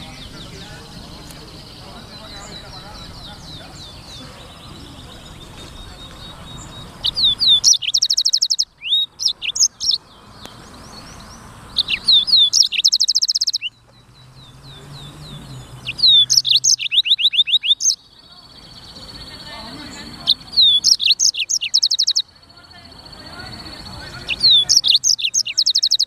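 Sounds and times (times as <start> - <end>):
songbird whistles and trills: 0.0 - 26.0.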